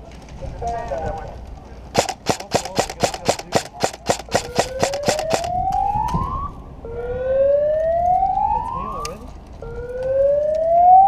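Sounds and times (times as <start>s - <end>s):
rapid airsoft gunfire: 1.9s - 5.6s
siren rising and falling: 5.5s - 11.0s.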